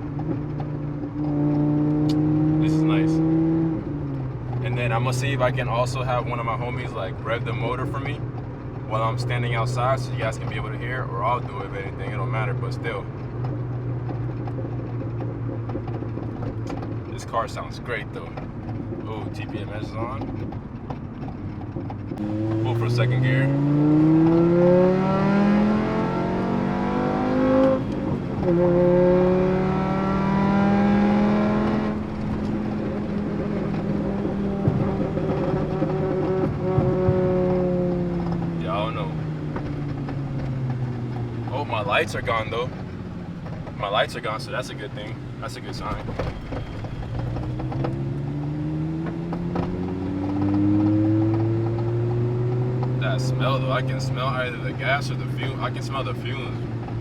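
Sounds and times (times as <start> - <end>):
car engine accelerating: 0.0 - 57.0.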